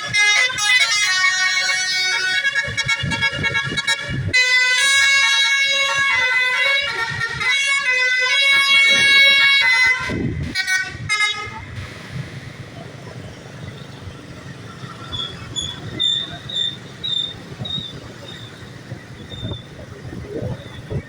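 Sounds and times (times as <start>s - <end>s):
air horn blasts: 0.0s - 11.8s
bus multi-tone air horn melody: 0.0s - 11.8s
low rumble of road traffic: 0.0s - 21.0s.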